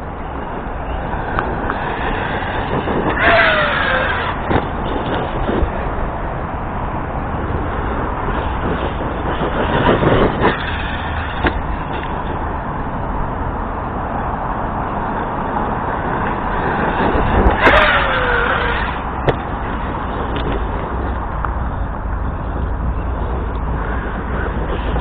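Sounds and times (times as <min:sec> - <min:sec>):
noisy background: 0:00.0 - 0:25.0
rc truck motor running: 0:01.4 - 0:05.6, 0:16.5 - 0:25.0.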